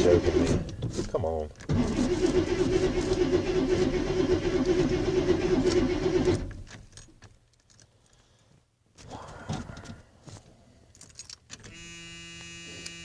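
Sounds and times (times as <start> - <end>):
starter cranking engine: 0.0 - 7.0.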